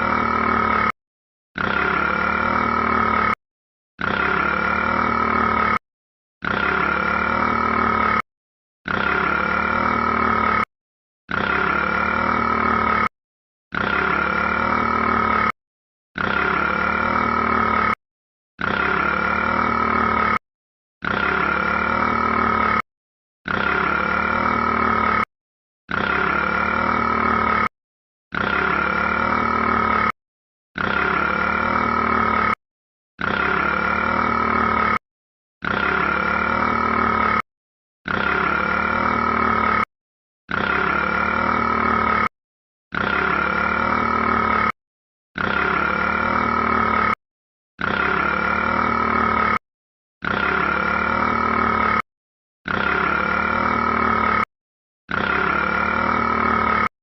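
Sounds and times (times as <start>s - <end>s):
long burp: 0.0s - 1.0s, 1.6s - 3.4s, 4.0s - 5.8s, 6.4s - 8.2s, 8.8s - 10.7s, 11.3s - 13.1s, 13.7s - 15.6s, 16.2s - 18.0s, 18.6s - 20.4s, 21.0s - 22.8s, 23.5s - 25.3s, 25.9s - 27.7s, 28.3s - 30.2s, 30.8s - 32.6s, 33.2s - 35.0s, 35.6s - 39.9s, 40.5s - 42.3s, 42.9s - 44.8s, 45.4s - 47.2s, 47.8s - 49.6s, 50.2s - 52.0s, 52.7s - 54.5s, 55.1s - 56.9s.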